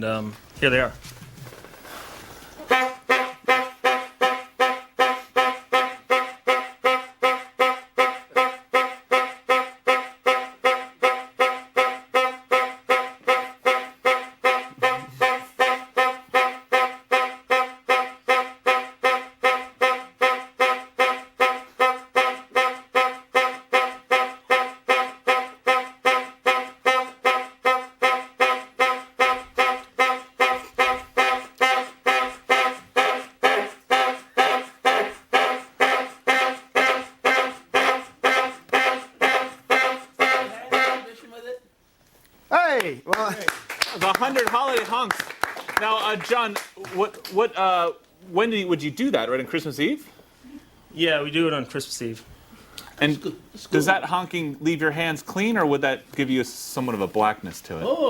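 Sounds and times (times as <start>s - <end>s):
horn honking short blasts: 2.6s - 41.4s.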